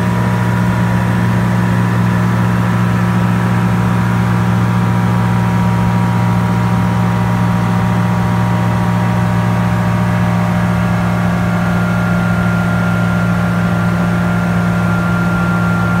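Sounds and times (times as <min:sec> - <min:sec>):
light aircraft engine drone: 0:00.0 - 0:16.0
thin steady whine: 0:09.0 - 0:16.0.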